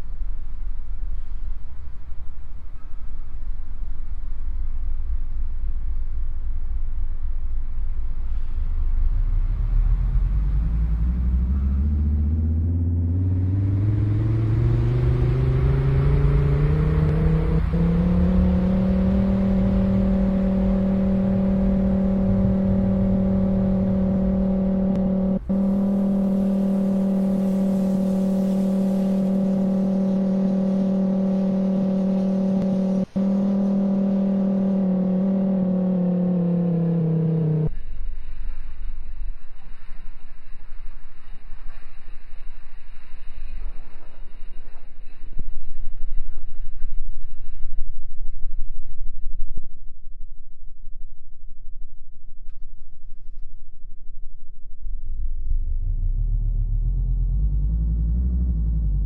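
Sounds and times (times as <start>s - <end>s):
tornado warning siren winding up: 11.0s - 37.7s.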